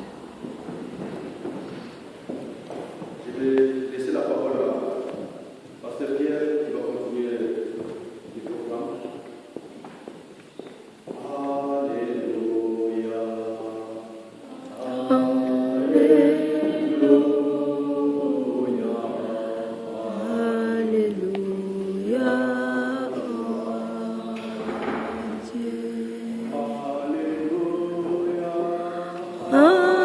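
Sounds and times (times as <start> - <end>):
congregation singing a hymn: 0.0 - 10.2, 10.9 - 30.0.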